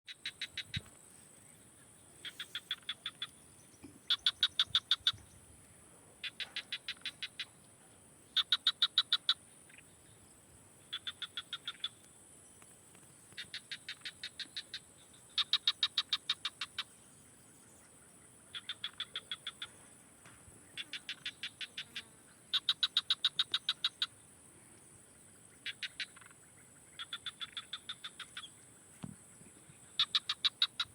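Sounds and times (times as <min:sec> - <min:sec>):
animals calling in high pulses: 0:00.1 - 0:00.9, 0:02.1 - 0:03.4, 0:04.0 - 0:05.3, 0:06.2 - 0:07.6, 0:08.3 - 0:09.9, 0:10.9 - 0:12.0, 0:13.4 - 0:17.0, 0:18.1 - 0:19.8, 0:20.7 - 0:24.2, 0:25.5 - 0:28.7, 0:29.8 - 0:30.9.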